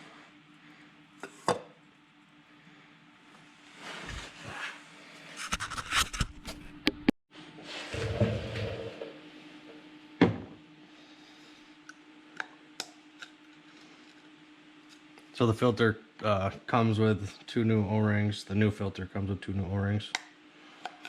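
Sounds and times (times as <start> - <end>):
faint steady hum: 0.0 - 21.0
clicks and scrapes of handling: 5.4 - 6.6.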